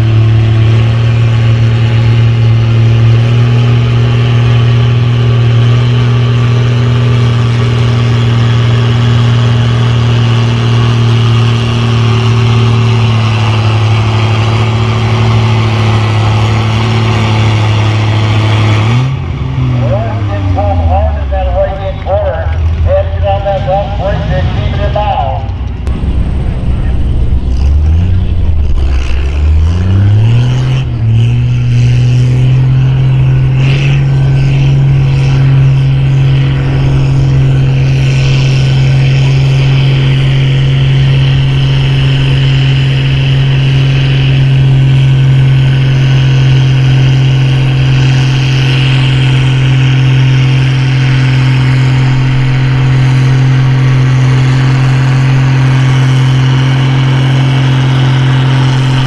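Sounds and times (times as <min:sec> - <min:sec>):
tractor engine revving: 0:00.0 - 0:59.0.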